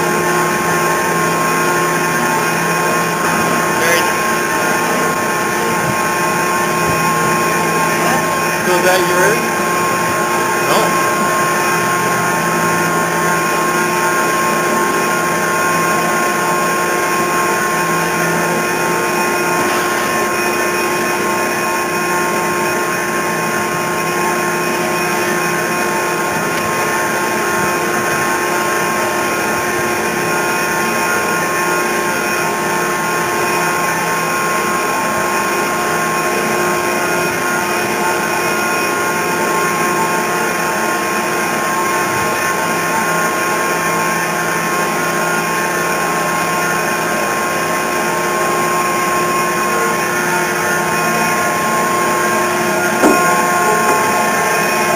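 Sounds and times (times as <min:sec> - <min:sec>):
motor-driven machine whining: 0:00.0 - 0:32.9, 0:48.0 - 0:54.9.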